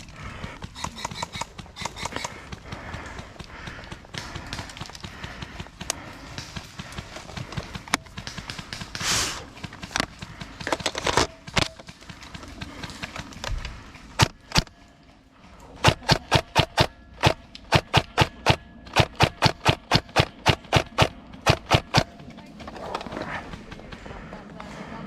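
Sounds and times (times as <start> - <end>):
airsoft gun shots: 15.8 - 22.1
scrapes: 22.1 - 25.0.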